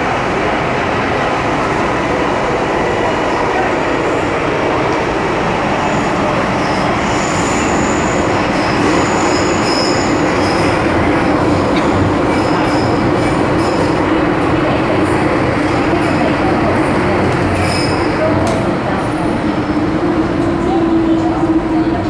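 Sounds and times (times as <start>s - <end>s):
train wheels rumbling on rail: 0.0s - 22.0s
high-pitched wheel squeals: 7.0s - 10.7s.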